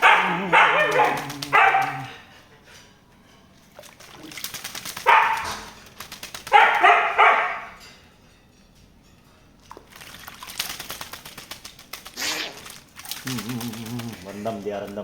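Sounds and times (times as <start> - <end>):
splashing and fluttering: 0.0 - 2.2, 3.7 - 7.9, 9.6 - 15.0.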